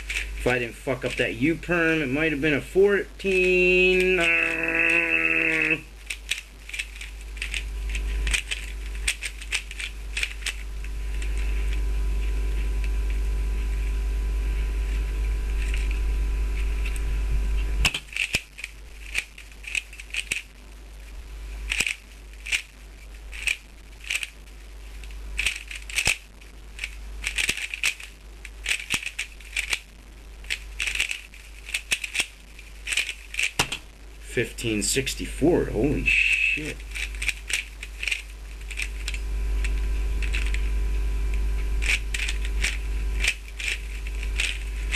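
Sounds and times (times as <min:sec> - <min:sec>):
steady low hum: 0:00.0 - 0:44.9
puzzle cube layers clicking: 0:03.2 - 0:11.8, 0:17.8 - 0:20.6, 0:21.7 - 0:24.4, 0:25.4 - 0:33.9, 0:36.0 - 0:40.7, 0:41.8 - 0:44.9.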